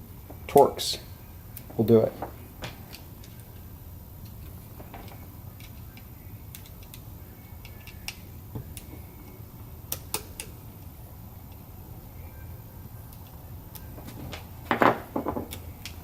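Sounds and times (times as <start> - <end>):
steady low hum: 0.0 - 16.0
screwdriver and parts clicking: 4.2 - 8.9.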